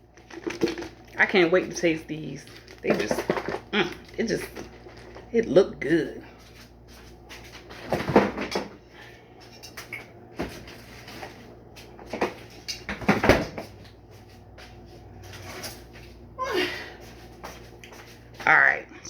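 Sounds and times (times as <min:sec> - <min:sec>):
kitchen knocks and clunks: 0:07.8 - 0:08.8, 0:12.0 - 0:13.8.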